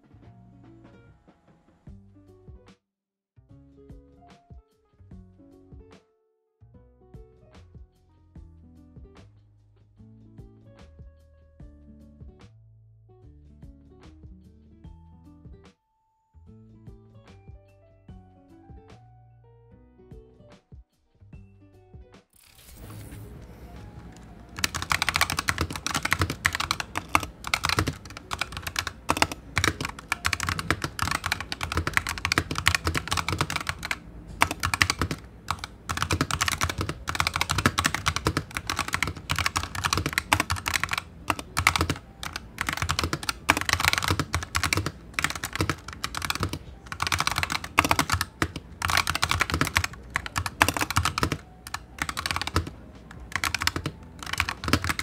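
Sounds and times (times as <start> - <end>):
mechanical keyboard typing: 24.0 - 55.0.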